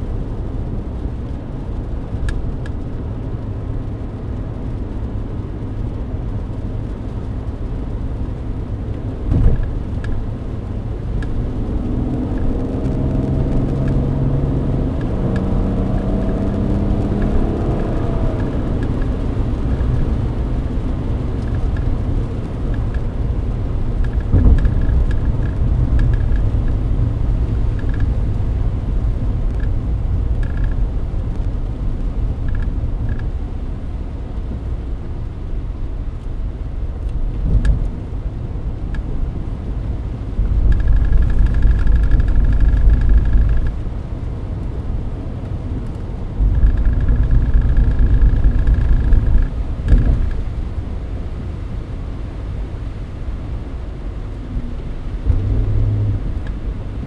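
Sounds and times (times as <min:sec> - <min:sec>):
car engine and tyre rumble: 0:00.0 - 0:57.0
short thumps: 0:09.3 - 0:10.0.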